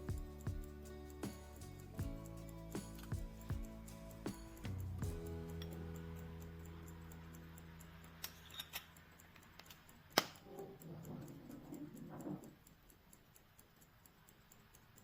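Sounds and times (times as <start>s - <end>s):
pocket watch ticking: 0.0s - 15.0s.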